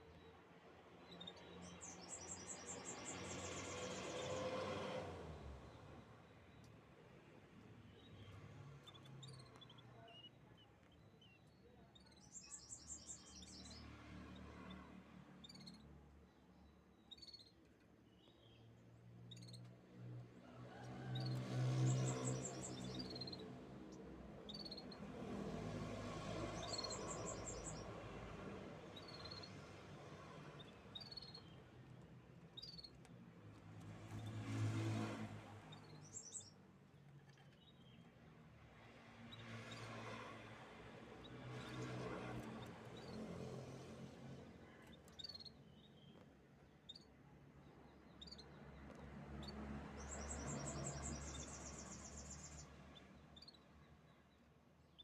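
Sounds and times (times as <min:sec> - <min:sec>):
canaries chirping: 0:24.5 - 0:25.1, 0:26.6 - 0:27.8.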